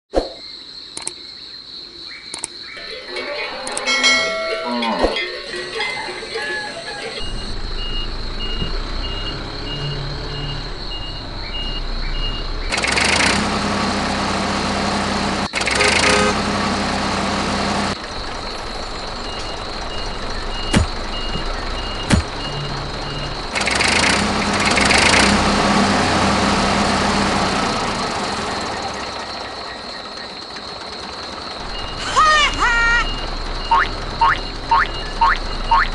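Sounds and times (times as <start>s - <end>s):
sharp clicks: 1.0s - 1.2s, 2.3s - 2.6s
heavy vehicle engine running: 5.3s - 35.9s
reversing beep: 6.4s - 12.5s, 19.2s - 23.4s, 33.0s - 35.9s.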